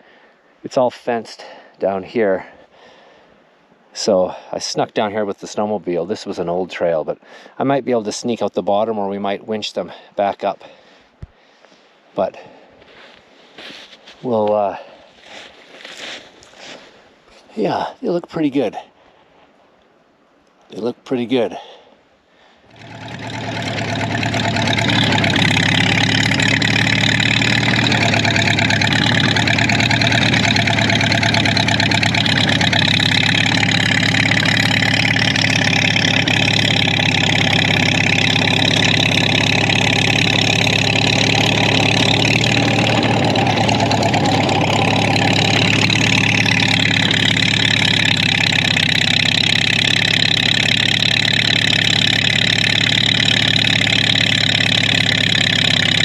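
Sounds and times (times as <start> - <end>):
snowmobile engine running: 22.7 - 56.0.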